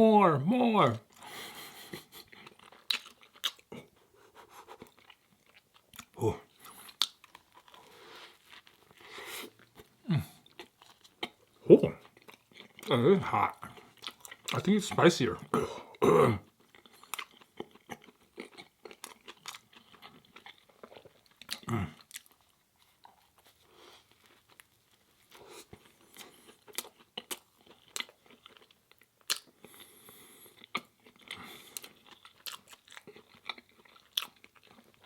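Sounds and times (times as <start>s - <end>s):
close-miked chewing: 1.0s - 35.0s
person humming: 6.2s - 6.4s, 10.0s - 10.4s.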